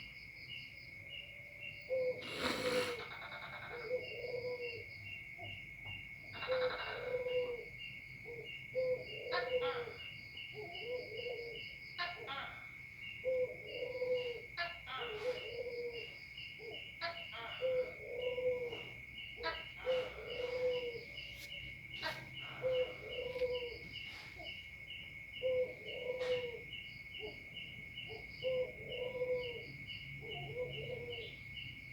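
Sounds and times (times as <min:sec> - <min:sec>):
dove cooing: 0:01.9 - 0:05.6, 0:06.3 - 0:12.6, 0:13.2 - 0:24.6, 0:25.2 - 0:31.5.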